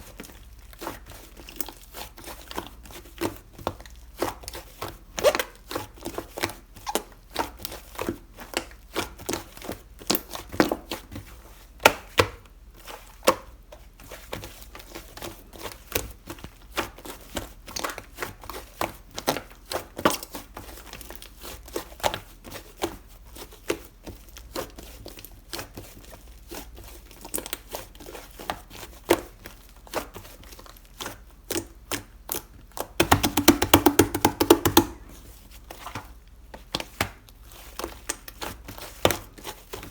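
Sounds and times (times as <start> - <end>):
sticky clicks and air pops: 33.0 - 35.0.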